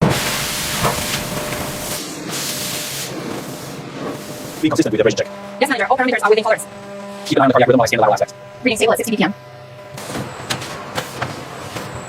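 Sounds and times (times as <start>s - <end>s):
loud steady hiss: 0.0s - 4.8s.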